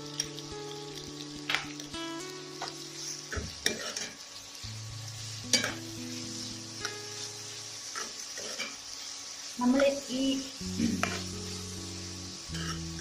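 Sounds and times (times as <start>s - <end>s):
shallots sizzling in oil: 0.0s - 13.0s
spatula tapping pan: 10.8s - 11.3s.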